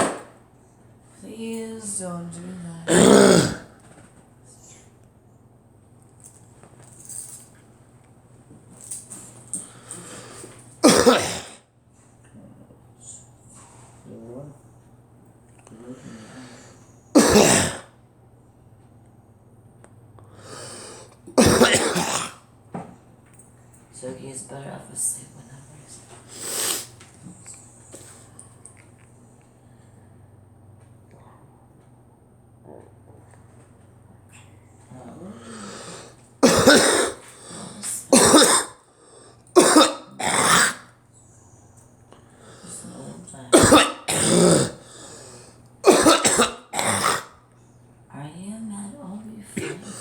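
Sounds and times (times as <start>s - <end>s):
person coughing: 2.9s - 3.8s, 10.0s - 11.6s, 17.2s - 17.9s, 21.3s - 22.4s, 35.4s - 38.8s, 39.5s - 40.9s, 43.5s - 45.2s, 45.8s - 47.4s, 49.6s - 50.0s.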